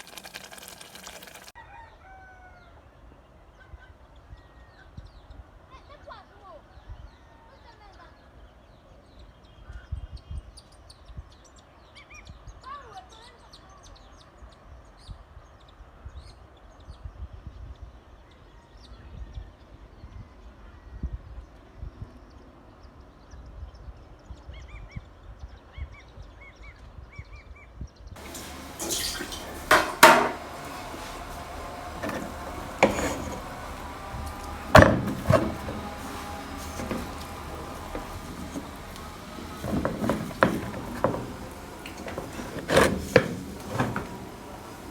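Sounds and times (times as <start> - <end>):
cookware clinking and knocking: 28.2 - 44.9.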